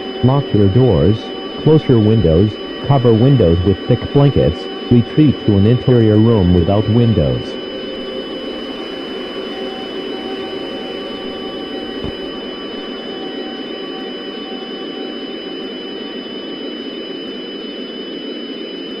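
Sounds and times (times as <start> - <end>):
faint high tones: 0.0 - 14.9.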